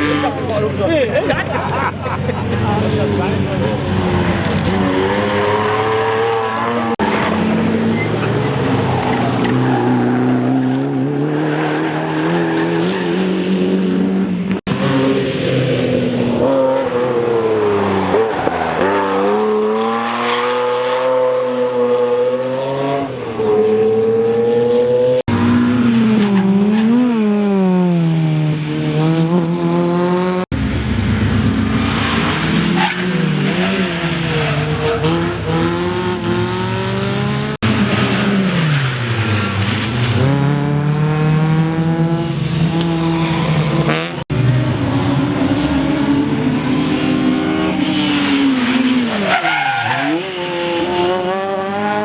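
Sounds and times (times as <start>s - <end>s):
rally car engines revving: 0.0s - 52.0s.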